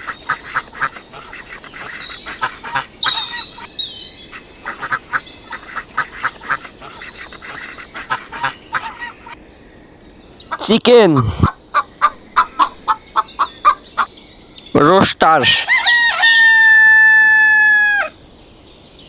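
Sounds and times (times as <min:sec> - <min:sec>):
ducks quacking: 0:00.0 - 0:03.7, 0:04.3 - 0:09.4, 0:10.5 - 0:14.1
higher thin calls: 0:10.5 - 0:13.8.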